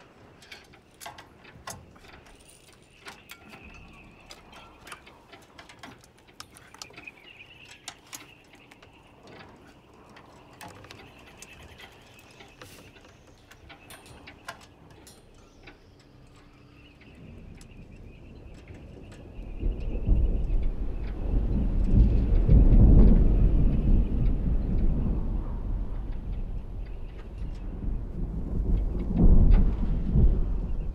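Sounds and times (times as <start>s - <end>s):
small clicks and light knocks: 0.0s - 19.3s
faint low rumble: 1.7s - 30.9s
thin wavering creak-like tone: 6.6s - 19.4s.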